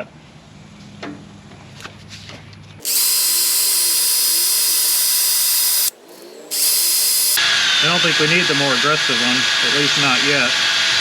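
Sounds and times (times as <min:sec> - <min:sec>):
power drill with wire brush: 0:02.8 - 0:07.9.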